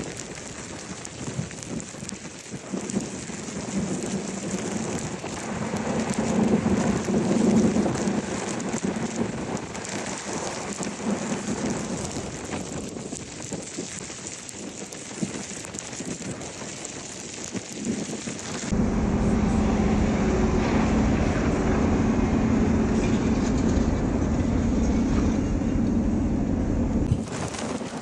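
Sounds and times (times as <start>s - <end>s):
car driving on slushy road: 18.7s - 27.6s.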